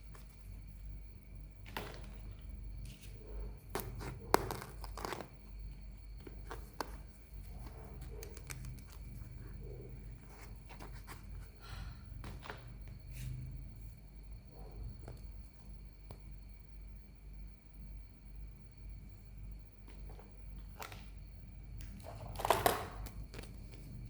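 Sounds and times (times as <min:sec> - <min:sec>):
plastic packaging crinkling: 0:03.7 - 0:05.5, 0:06.4 - 0:09.4.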